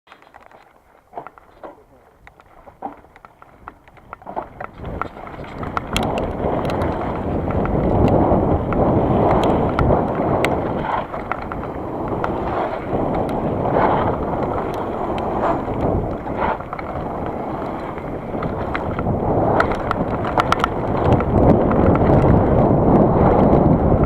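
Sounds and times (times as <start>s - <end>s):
wind buffeting microphone: 1.1s - 24.0s.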